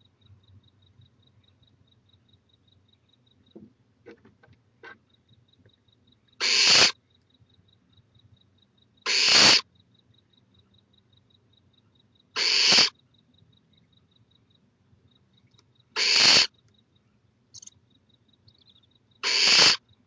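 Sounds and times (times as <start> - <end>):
owl breathy hisses: 6.4 - 7.0, 9.1 - 9.6, 12.4 - 12.9, 16.0 - 16.5, 19.2 - 19.8.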